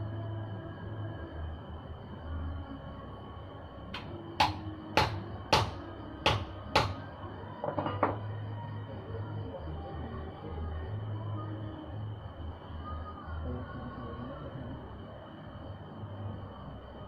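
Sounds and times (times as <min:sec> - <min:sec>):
steady low hum: 0:00.0 - 0:17.0
hand tool striking metal: 0:04.0 - 0:07.0.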